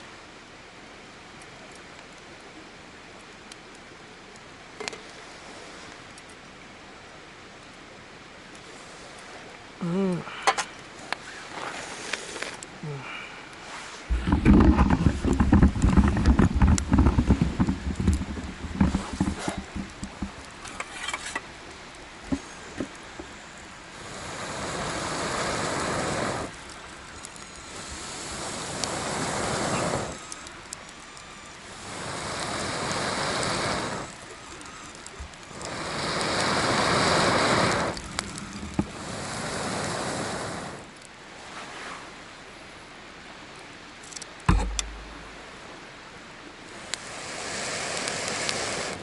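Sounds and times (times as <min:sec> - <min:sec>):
fire crackling: 0:00.0 - 0:49.0
person blowing on fire: 0:23.9 - 0:26.7, 0:27.5 - 0:30.5, 0:31.7 - 0:40.9, 0:46.8 - 0:49.0
thump: 0:44.5 - 0:45.0.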